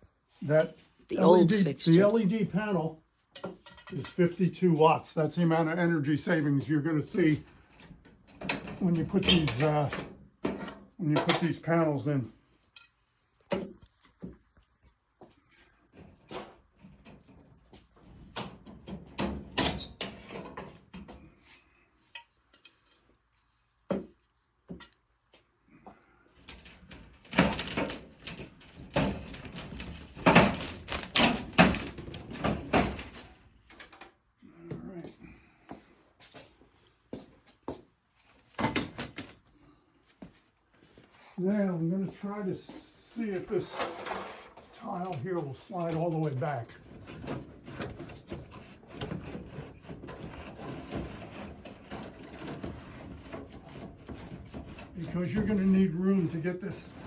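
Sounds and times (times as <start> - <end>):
hard material scraping and knocking: 26.6 - 34.1, 43.2 - 57.0.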